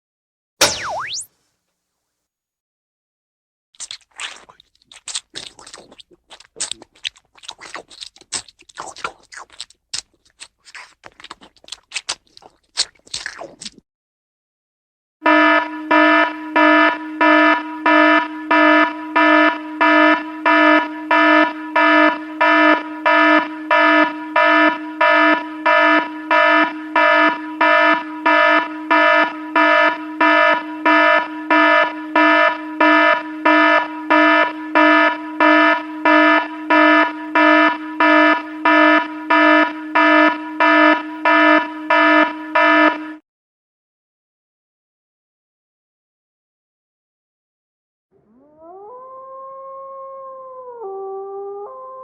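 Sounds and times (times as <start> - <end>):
pulsing electronic alarm buzzer: 15.2 - 43.2.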